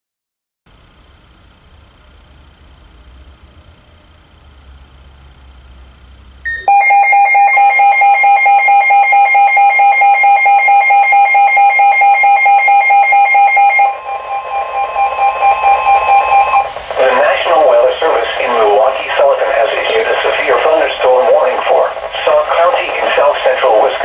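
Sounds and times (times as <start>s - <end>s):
pulsing electronic alarm beep: 6.5s - 16.8s
steady warning tone: 6.5s - 24.0s.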